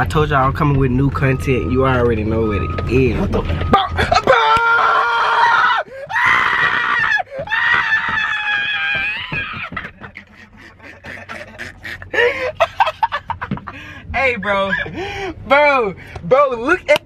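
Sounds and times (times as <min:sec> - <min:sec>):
person screaming: 0:03.8 - 0:09.8.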